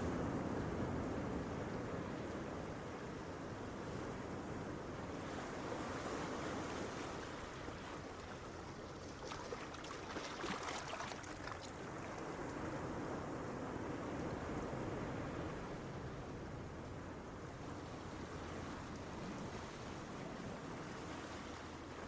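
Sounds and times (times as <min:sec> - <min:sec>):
sea waves breaking on beach: 0:05.2 - 0:15.7
receding water fizzing: 0:08.0 - 0:12.4.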